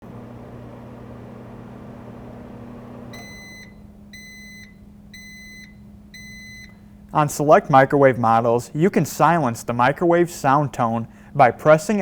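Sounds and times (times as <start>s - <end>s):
microwave oven humming: 0.0s - 8.6s
microwave beeps: 2.4s - 6.9s.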